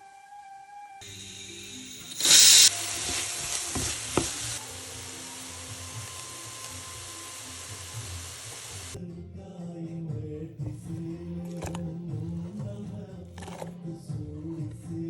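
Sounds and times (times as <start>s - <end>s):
food sizzling in hot oil: 1.0s - 9.0s.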